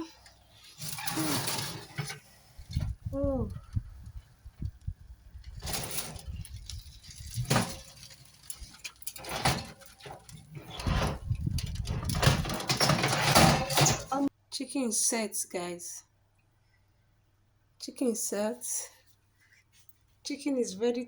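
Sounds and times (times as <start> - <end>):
oven door opening: 0.8 - 3.0, 5.6 - 6.7, 7.4 - 14.3
roasting tray knocks and scrapes: 5.6 - 14.1.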